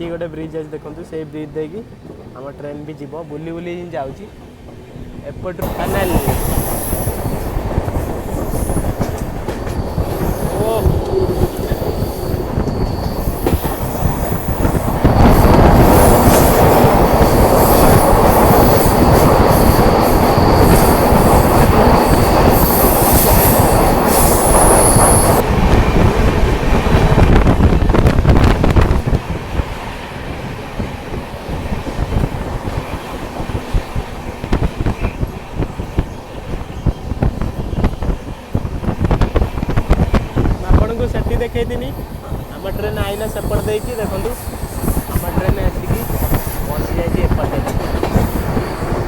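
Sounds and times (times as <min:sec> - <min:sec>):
train wheels rumbling on rails: 0:04.3 - 0:49.0
high wheel squeal: 0:08.4 - 0:25.4, 0:41.2 - 0:49.0.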